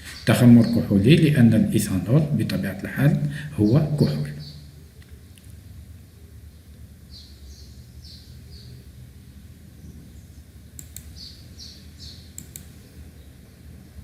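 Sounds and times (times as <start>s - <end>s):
small birds chirping: 0.0s - 5.8s, 6.4s - 13.7s
low steady hum: 0.0s - 14.0s
sharp clicks: 10.7s - 11.3s, 12.3s - 12.8s.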